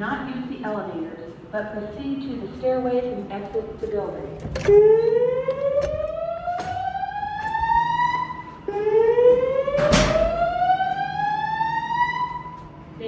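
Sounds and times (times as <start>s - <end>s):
voice evacuation messages: 0.0s - 5.6s
fire alarm whoop tone: 5.0s - 12.6s.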